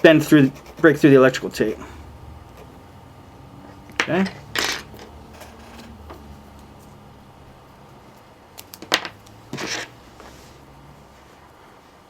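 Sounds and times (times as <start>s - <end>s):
faint steady hum: 0.0s - 12.0s
rustling scrape: 9.5s - 12.0s.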